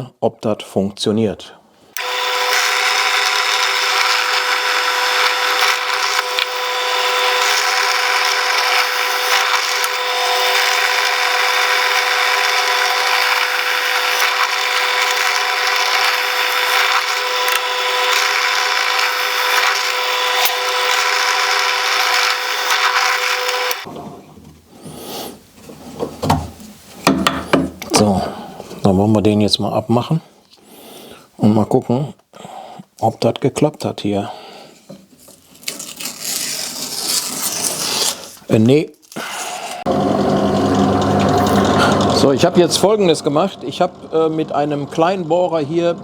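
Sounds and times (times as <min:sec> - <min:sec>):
electric drill boring wood: 0:02.0 - 0:23.9, 0:39.2 - 0:46.0.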